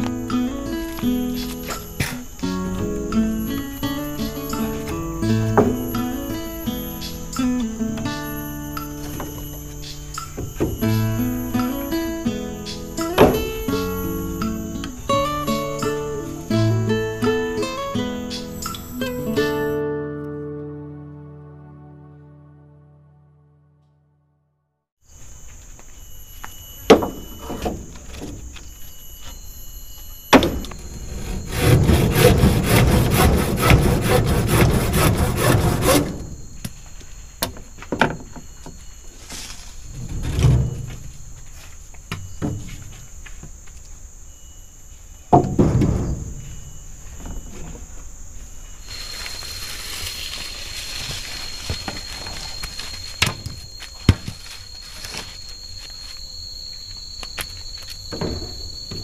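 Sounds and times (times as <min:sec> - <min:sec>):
insects droning: 0:00.0 - 0:22.0, 0:25.0 - 0:59.0
rapid strokes on wood: 0:31.2 - 0:36.1.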